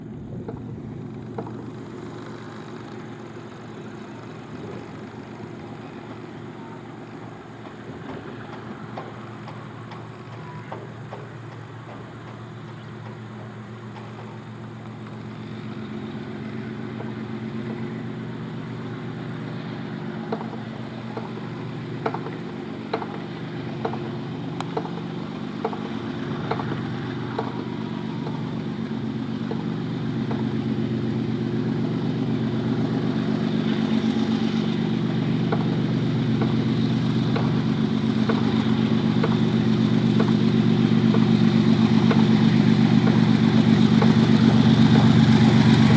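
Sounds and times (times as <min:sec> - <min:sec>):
diesel locomotive engines droning: 0:00.0 - 0:45.9.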